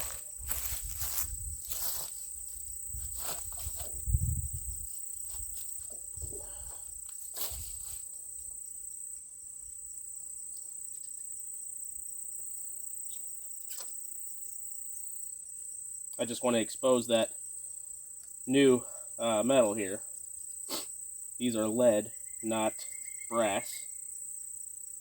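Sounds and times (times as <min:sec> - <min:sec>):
insect trilling: 0:16.0 - 0:24.8.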